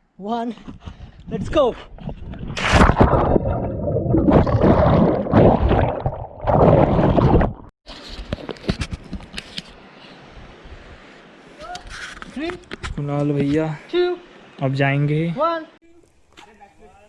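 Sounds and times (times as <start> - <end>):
churning gurgling water: 2.4 - 7.7
person splashing into water: 2.4 - 7.7.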